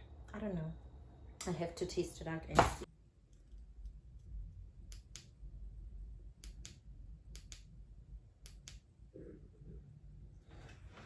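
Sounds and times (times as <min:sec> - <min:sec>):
low background rumble: 0:03.0 - 0:10.8.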